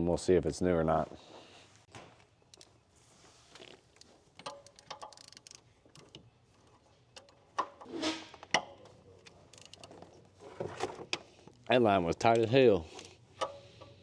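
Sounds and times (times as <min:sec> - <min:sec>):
metal tool clicks and clinks: 0:04.0 - 0:06.2, 0:09.2 - 0:09.9.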